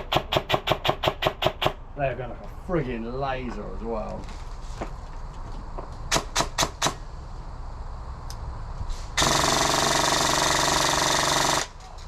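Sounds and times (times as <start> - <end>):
airsoft gun full-auto burst: 9.2 - 11.8.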